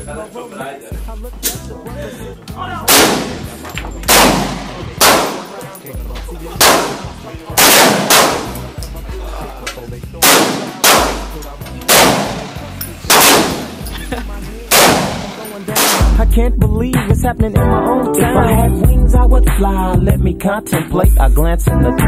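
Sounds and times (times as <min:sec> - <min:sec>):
pistol shots ringing: 0:02.9 - 0:05.8, 0:06.5 - 0:08.8, 0:10.2 - 0:13.9, 0:14.7 - 0:16.2.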